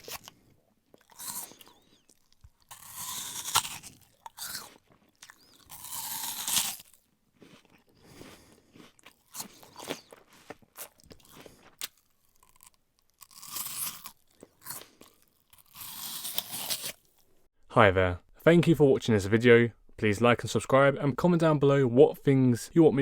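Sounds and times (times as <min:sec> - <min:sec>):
apple crunching: 0:00.0 - 0:17.4.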